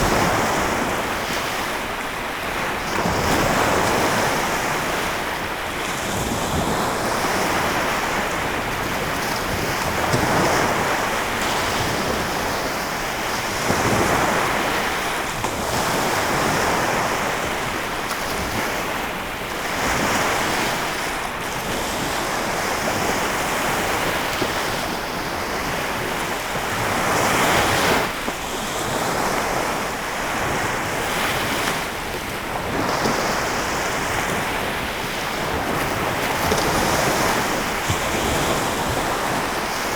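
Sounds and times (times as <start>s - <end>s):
waves washing onto shore: 0.0s - 39.9s.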